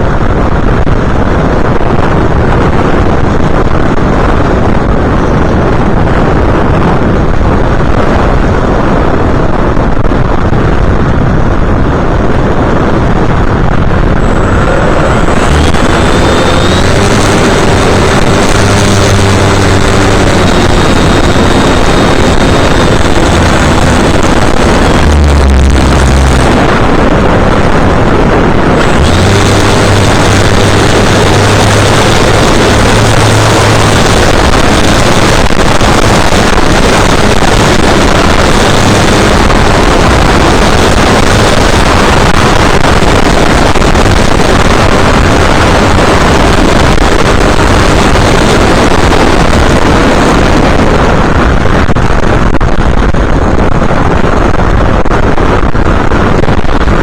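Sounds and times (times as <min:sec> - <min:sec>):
wind rushing over microphone: 0:00.0 - 0:57.0
motor and propeller drone: 0:13.8 - 0:50.9.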